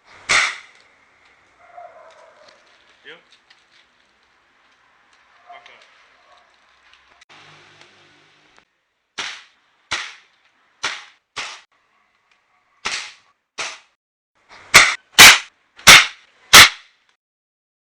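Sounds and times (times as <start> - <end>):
sharp gunshot-like bangs: 0.3 - 0.7.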